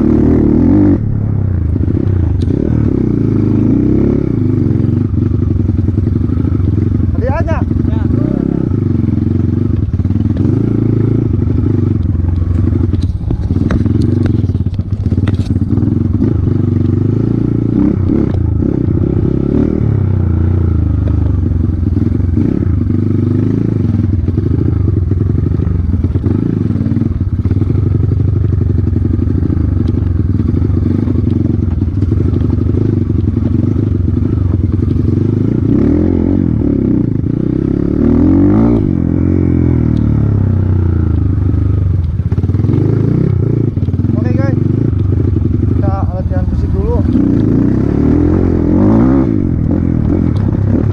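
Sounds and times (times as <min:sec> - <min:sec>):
motorcycle engines running: 0:00.0 - 0:50.9.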